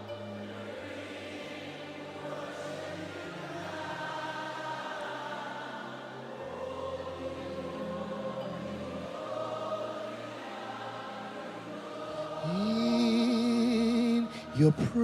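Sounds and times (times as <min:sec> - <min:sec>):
choir singing worship music: 0:00.0 - 0:15.0.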